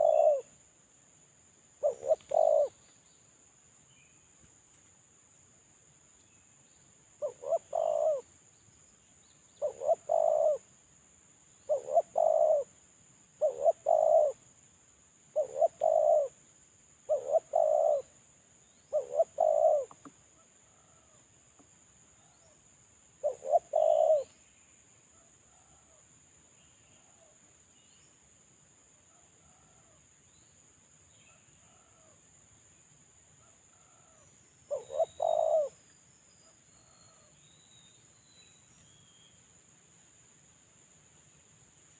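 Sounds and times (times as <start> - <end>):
dove cooing: 0.0 - 0.5, 1.8 - 2.8, 7.2 - 8.3, 9.6 - 10.6, 11.7 - 12.7, 13.4 - 14.4, 15.3 - 16.4, 17.1 - 18.1, 18.9 - 20.1, 23.2 - 24.3, 33.8 - 35.8
small birds chirping: 0.0 - 0.5, 1.8 - 4.9, 6.2 - 10.6, 11.6 - 12.7, 13.4 - 14.4, 15.3 - 16.3, 17.0 - 22.6, 23.2 - 24.9, 33.8 - 39.6.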